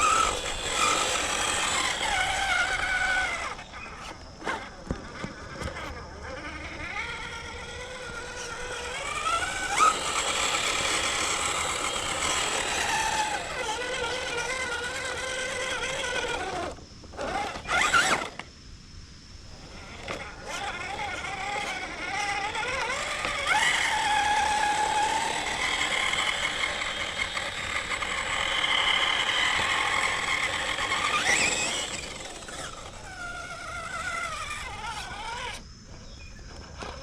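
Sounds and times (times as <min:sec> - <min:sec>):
electric motor and gearbox whining: 0:00.0 - 0:18.5, 0:19.5 - 0:37.0.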